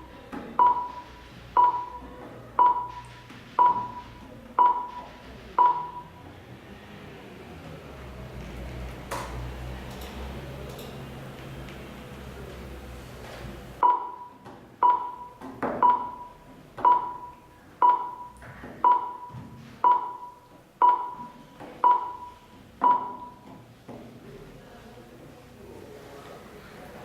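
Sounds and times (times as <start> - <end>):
short electronic pings: 0.6 - 6.2, 13.8 - 23.4.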